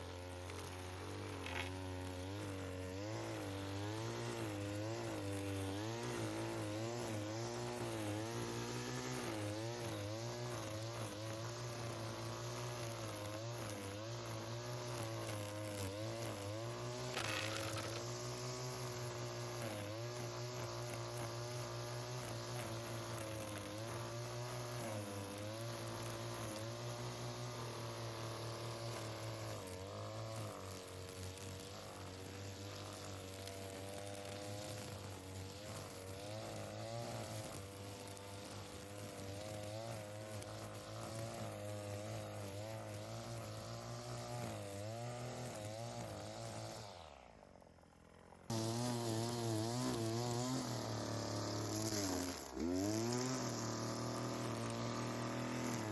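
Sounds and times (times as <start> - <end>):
small engine running: 0.0 - 55.9.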